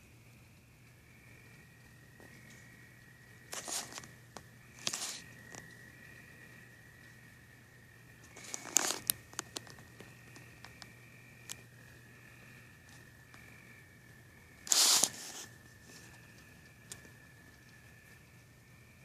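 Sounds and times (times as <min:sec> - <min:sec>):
crickets chirping: 0:00.0 - 0:19.0
clicks and rustles: 0:03.5 - 0:05.7, 0:08.2 - 0:11.6, 0:14.7 - 0:17.8
loud rustling burst: 0:14.6 - 0:15.5.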